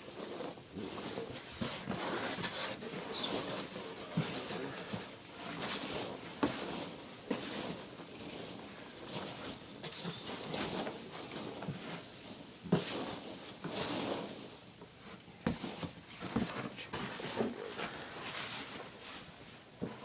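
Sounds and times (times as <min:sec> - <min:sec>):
backpack rustling and knocking: 0:15.4 - 0:17.6.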